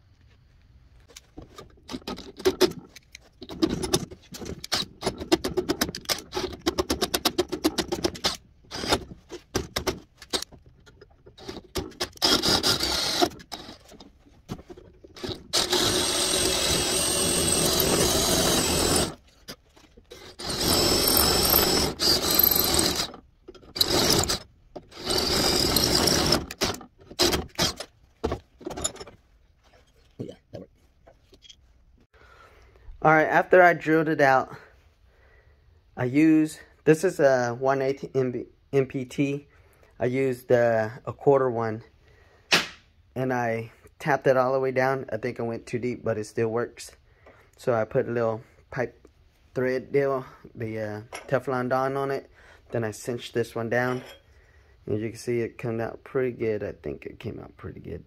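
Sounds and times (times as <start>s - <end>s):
power drill drilling metal: 8.2s - 9.0s, 11.4s - 13.9s, 15.2s - 19.2s, 20.1s - 27.9s.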